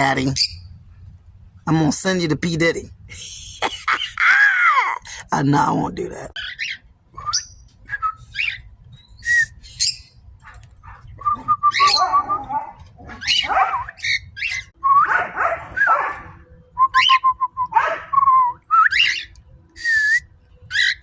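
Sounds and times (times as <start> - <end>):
lovebirds chirping and squawking: 0.0 - 1.0, 6.1 - 16.4, 18.9 - 19.4, 20.5 - 21.0.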